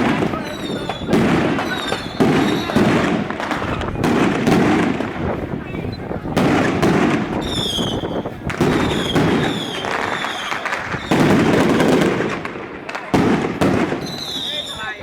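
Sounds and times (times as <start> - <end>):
firecrackers crackling: 0.0 - 15.0.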